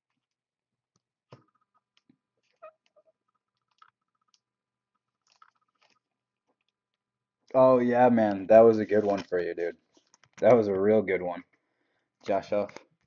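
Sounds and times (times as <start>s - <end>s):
faint clicks and taps of cards: 12.2s - 13.0s.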